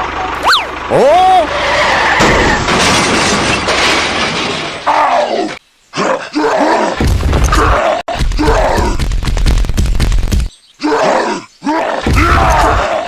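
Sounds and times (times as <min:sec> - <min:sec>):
voice making pitch-bending sounds: 0:00.3 - 0:01.5.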